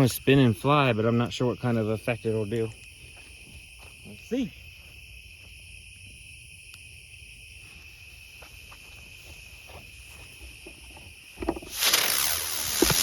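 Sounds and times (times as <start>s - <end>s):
crickets chirring: 0.0s - 13.0s
firework pops: 11.4s - 13.0s
spinning firework hissing: 11.5s - 13.0s.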